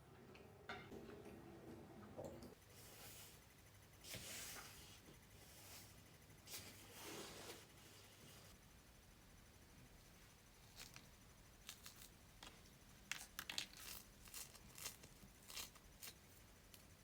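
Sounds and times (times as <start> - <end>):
faint rustles and crinkles: 10.2 - 17.0.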